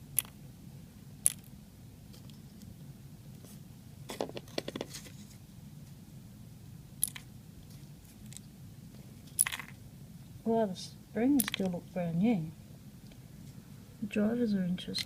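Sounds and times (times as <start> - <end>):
metal pins clinking on hard surface: 9.4 - 9.8, 11.4 - 11.8.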